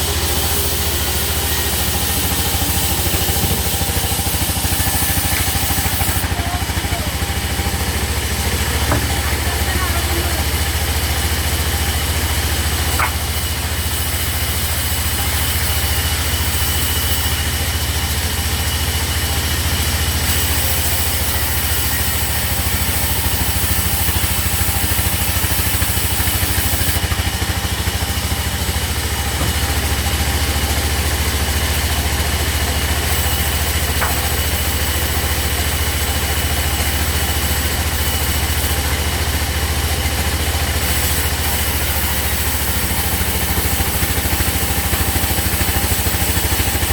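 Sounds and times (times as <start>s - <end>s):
sawmill machinery pulsing drone: 0.0s - 46.9s.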